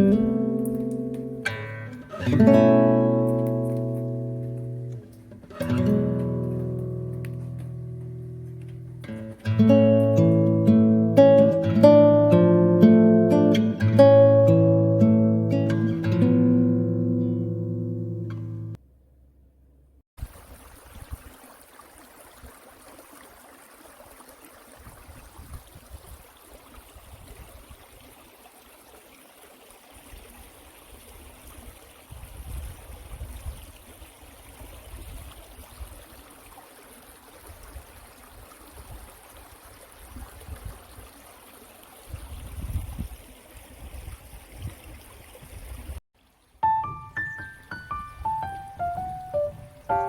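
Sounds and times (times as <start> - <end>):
stream trickling: 0.0 - 18.4, 20.2 - 50.0
wind rumble on microphone: 24.7 - 28.1, 31.5 - 36.0, 37.5 - 39.2, 40.0 - 41.2, 42.0 - 46.0.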